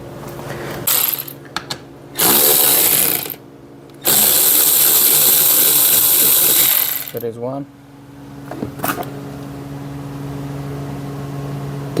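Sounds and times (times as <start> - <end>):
power drill spinning out screws: 0.8 - 1.3, 2.2 - 3.4, 4.0 - 7.2.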